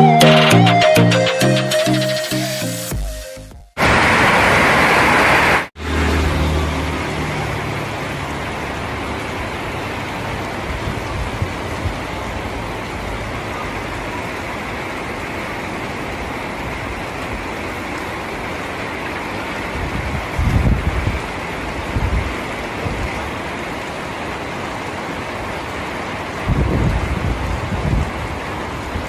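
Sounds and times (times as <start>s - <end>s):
music: 0.0s - 3.8s
steady rain hiss: 3.8s - 6.0s, 7.0s - 29.0s.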